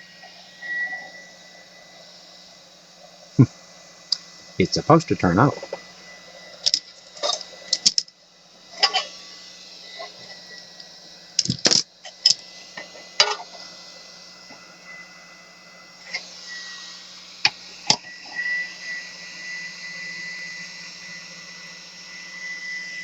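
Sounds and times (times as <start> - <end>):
low hum: 0.0 - 11.7
fan running with hiss of air: 0.0 - 23.0.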